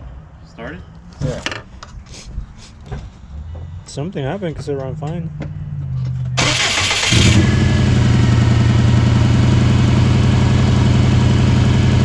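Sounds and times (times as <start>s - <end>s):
car engine idling: 3.5s - 12.0s
car engine cranking: 6.0s - 9.0s.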